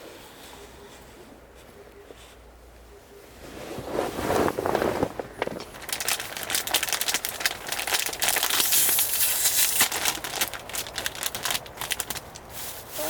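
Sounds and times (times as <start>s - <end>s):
crinkling and crackling: 0.4s - 13.0s.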